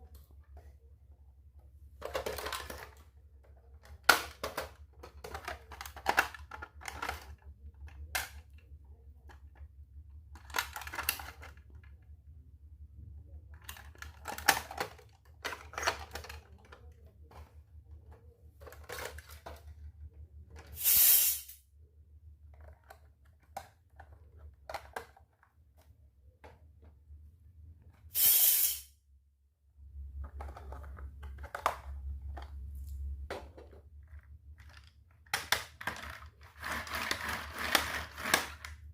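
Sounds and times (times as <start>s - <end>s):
small clicks taps and rustles: 30.2s - 38.9s.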